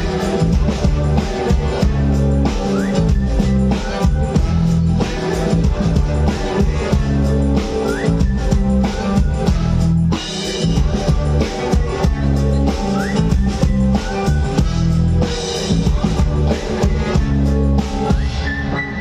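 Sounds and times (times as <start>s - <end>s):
live rock band playing: 0.0s - 19.0s.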